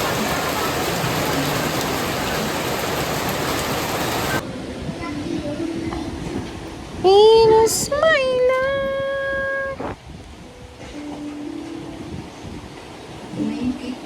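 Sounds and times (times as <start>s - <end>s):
heavy rain hissing: 0.0s - 4.4s.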